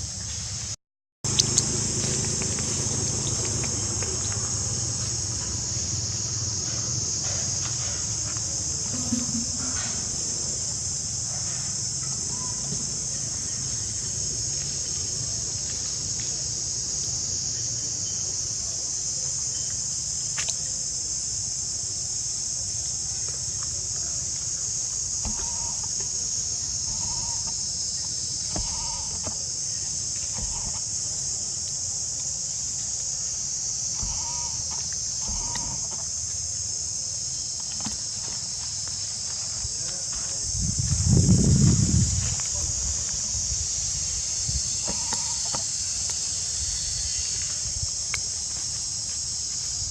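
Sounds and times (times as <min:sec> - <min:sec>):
insects droning: 0:00.0 - 0:49.9
faint animal calls: 0:25.2 - 0:26.0, 0:26.9 - 0:27.6, 0:28.5 - 0:29.3, 0:34.0 - 0:35.9, 0:44.8 - 0:45.6.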